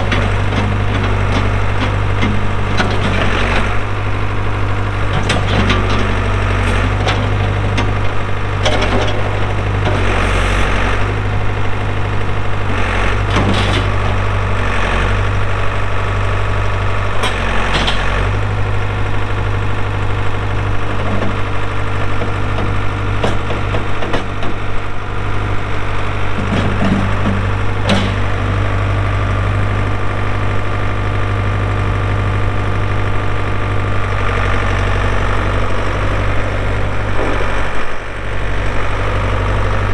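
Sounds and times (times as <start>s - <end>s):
backhoe diesel engine running: 0.0s - 39.9s.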